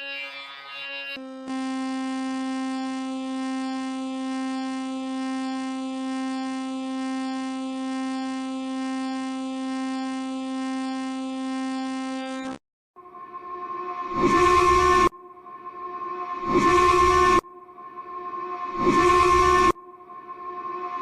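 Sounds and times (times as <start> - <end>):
buzzy electronic alert tone: 9.8 - 21.0.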